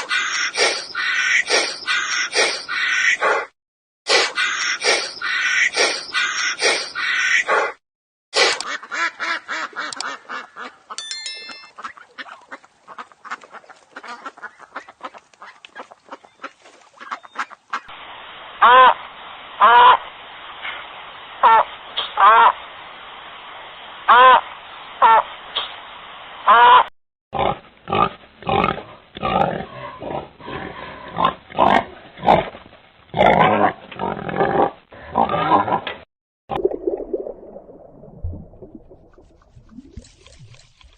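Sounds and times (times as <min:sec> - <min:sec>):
ducks quacking: 0:00.0 - 0:03.5, 0:04.1 - 0:07.7, 0:08.4 - 0:11.0, 0:11.8 - 0:17.9
pigs grunting and oinking: 0:27.4 - 0:32.5, 0:33.1 - 0:36.0.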